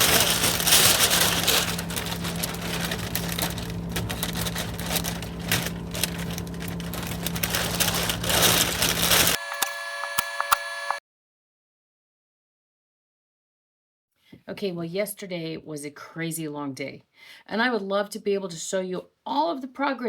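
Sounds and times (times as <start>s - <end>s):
small motor humming and rattling: 0.0s - 11.0s
clicks: 9.4s - 11.0s.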